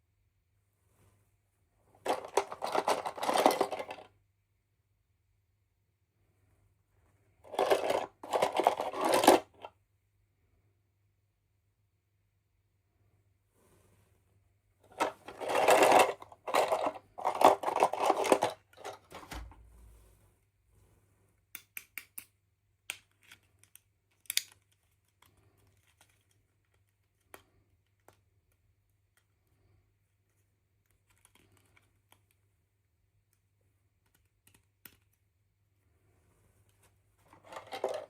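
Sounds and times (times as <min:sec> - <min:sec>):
packaging rustling: 0:02.0 - 0:04.1, 0:07.5 - 0:09.6, 0:14.9 - 0:19.2, 0:37.3 - 0:38.0
small sharp clicks and taps: 0:21.5 - 0:29.3, 0:34.0 - 0:35.2.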